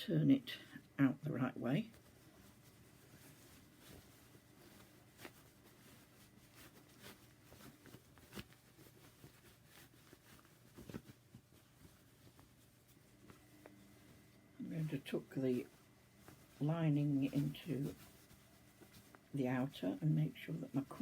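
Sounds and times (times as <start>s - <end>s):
cloth rustling: 0.0s - 21.0s
low steady hum: 0.0s - 21.0s.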